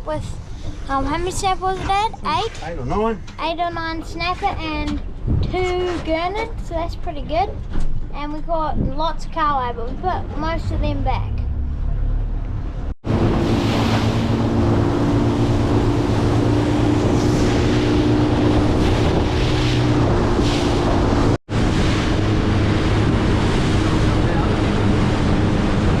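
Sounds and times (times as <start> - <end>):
wind buffeting microphone: 0.0 - 11.7, 13.0 - 26.0
boat motor humming: 11.4 - 26.0
water rushing past hull: 13.0 - 26.0.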